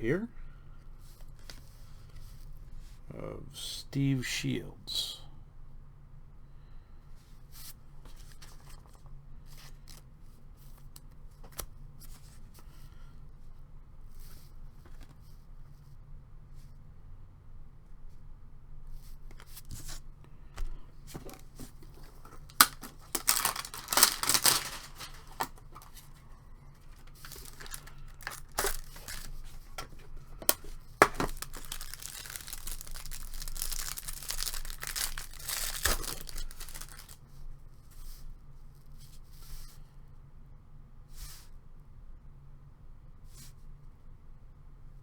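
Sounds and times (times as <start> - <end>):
card pack wrappers tearing and crinkling: 21.2 - 26.1, 26.9 - 37.2.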